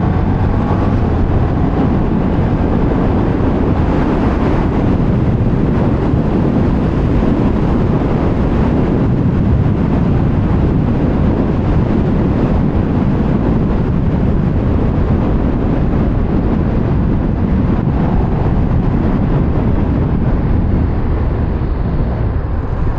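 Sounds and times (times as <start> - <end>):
motorcycle engine running: 0.0 - 11.9
wind rushing over microphone: 0.0 - 22.9.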